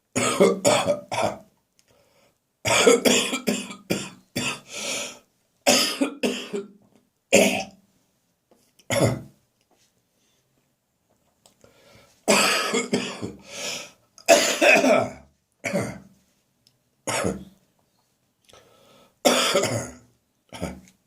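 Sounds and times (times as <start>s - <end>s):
person coughing: 0.2s - 1.4s, 2.7s - 4.7s, 5.7s - 6.7s, 7.4s - 7.7s, 8.9s - 9.3s, 12.3s - 13.5s, 14.3s - 16.1s, 17.1s - 17.5s, 19.3s - 20.0s
person clearing throat: 0.2s - 1.5s, 2.7s - 4.7s, 5.7s - 6.7s, 7.4s - 7.8s, 8.9s - 9.4s, 12.3s - 13.4s, 14.3s - 16.1s, 17.1s - 17.5s, 19.3s - 20.9s.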